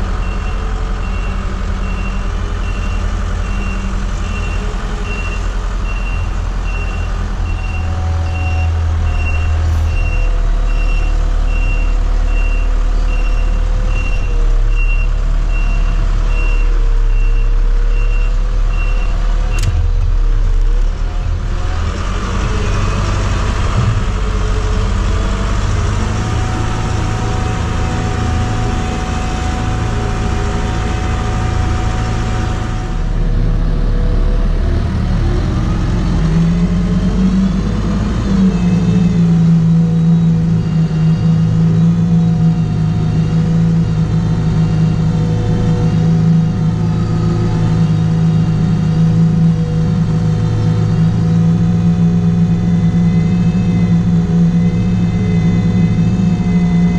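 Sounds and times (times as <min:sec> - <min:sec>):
diesel engine running under load: 0:00.0 - 0:56.9
reversing alarm beeping: 0:00.2 - 0:19.9, 0:35.6 - 0:56.9.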